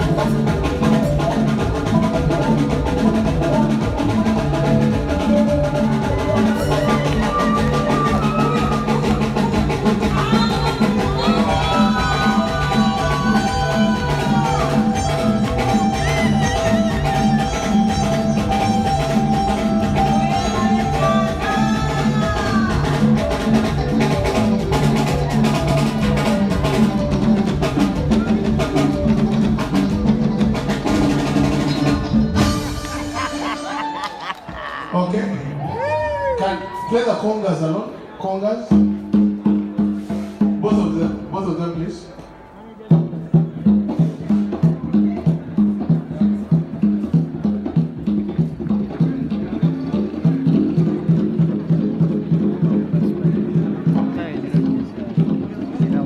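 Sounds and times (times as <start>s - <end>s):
steady bass line: 0.0s - 33.8s
drums and percussion: 0.0s - 56.0s
lead instrument sliding in pitch: 4.5s - 22.6s.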